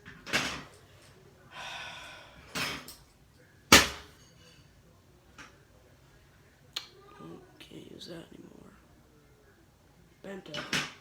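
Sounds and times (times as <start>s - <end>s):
loud sharp smack on metal part: 3.7s - 4.1s.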